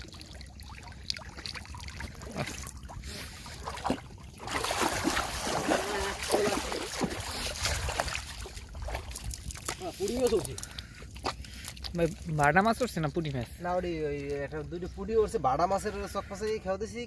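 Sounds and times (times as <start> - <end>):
water splashing and pouring: 0.0 - 13.1.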